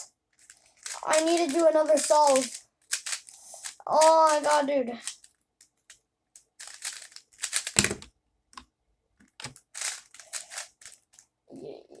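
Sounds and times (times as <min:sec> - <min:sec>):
plastic puzzle cube clacking: 0:00.4 - 0:05.3, 0:06.6 - 0:08.1, 0:09.2 - 0:11.0.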